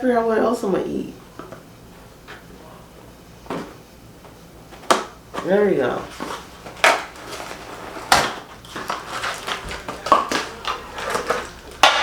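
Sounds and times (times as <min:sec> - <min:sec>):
cardboard box rustling: 0:06.0 - 0:11.7
sharp knocks of falling parts: 0:08.1 - 0:12.0.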